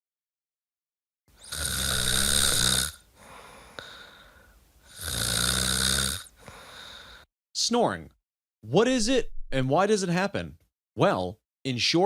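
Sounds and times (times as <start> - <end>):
person snoring: 1.4 - 7.3
quiet breath: 3.1 - 4.7, 6.3 - 7.3.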